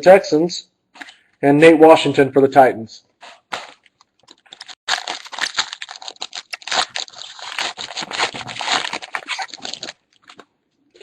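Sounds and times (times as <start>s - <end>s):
wrapper crinkling and tearing: 3.2s - 10.5s.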